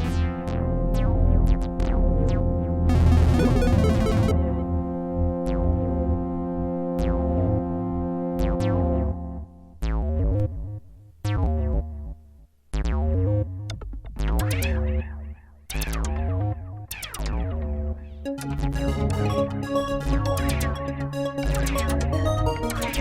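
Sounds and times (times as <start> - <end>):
bright synthesizer chord: 2.9 - 4.8
deep pulsing bass line: 2.9 - 4.9
plucked synthesizer notes: 2.9 - 4.9.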